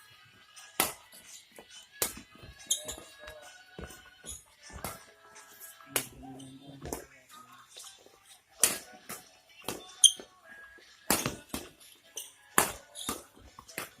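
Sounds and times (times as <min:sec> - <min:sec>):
badminton racket hits: 0:08.6 - 0:10.3, 0:11.1 - 0:14.0.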